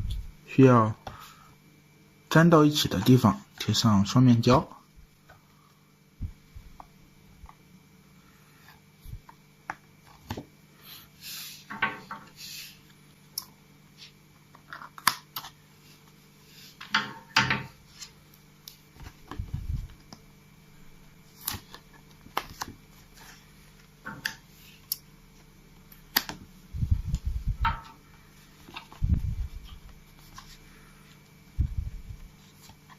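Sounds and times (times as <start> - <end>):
paper rustling and crinkling: 28.4 - 31.2, 31.9 - 32.9.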